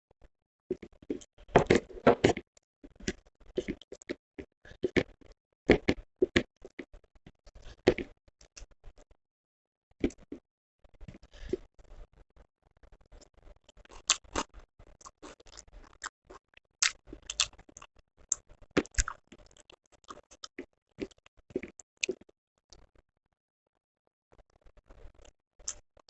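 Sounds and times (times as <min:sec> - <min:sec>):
chewing: 0:00.7 - 0:06.9, 0:12.9 - 0:22.9.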